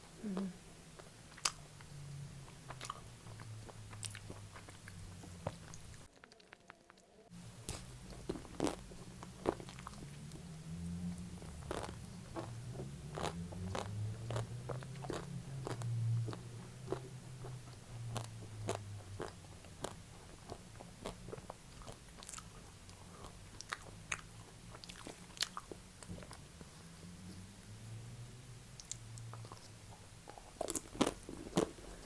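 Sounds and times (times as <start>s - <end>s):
crunchy chewing of ice cream: 0.2s - 27.5s, 28.8s - 32.0s
low hum: 7.4s - 20.8s.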